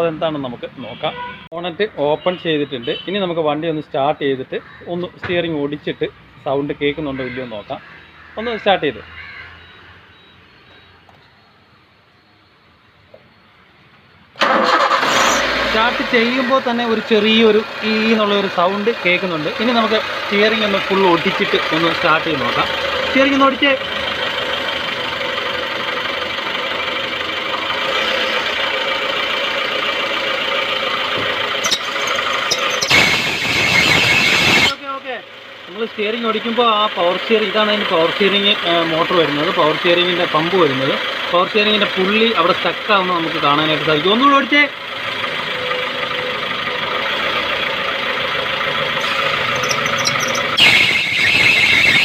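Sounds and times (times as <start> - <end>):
car engine idling: 15.8 - 52.0
loud high belt squeal: 31.6 - 34.8, 49.0 - 52.0.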